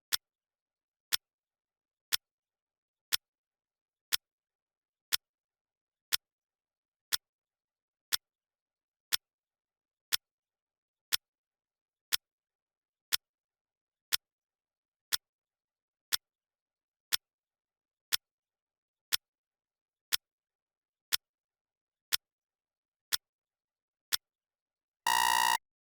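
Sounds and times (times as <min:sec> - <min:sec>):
clock ticking: 0:25.1 - 0:25.6
electronic alarm beep: 0:25.1 - 0:25.6.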